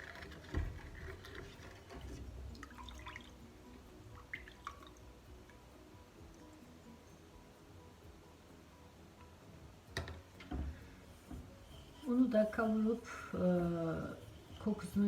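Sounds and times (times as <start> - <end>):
spoon stirring syrup: 0.0 - 3.2.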